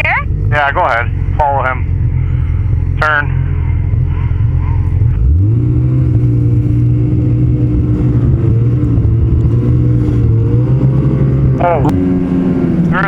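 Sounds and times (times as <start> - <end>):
snowmobile engine speeding up: 0.0 - 13.0.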